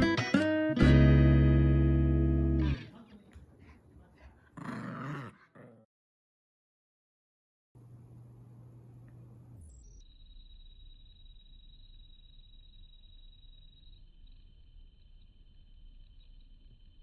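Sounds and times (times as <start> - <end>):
plucked guitar music: 0.0 - 2.9.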